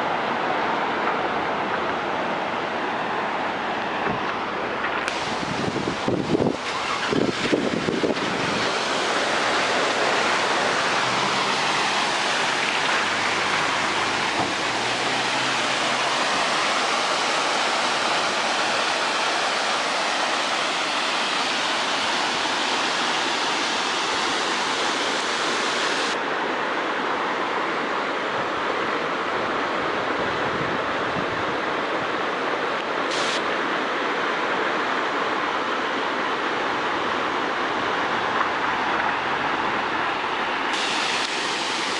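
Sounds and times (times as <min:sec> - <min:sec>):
waterfall roaring: 0:00.0 - 0:41.9
wind buffeting microphone: 0:05.0 - 0:08.8.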